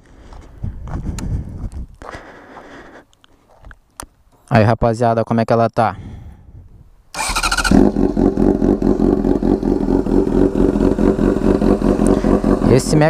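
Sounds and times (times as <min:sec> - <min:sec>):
motorcycle engine starting and idling: 0:07.2 - 0:13.0.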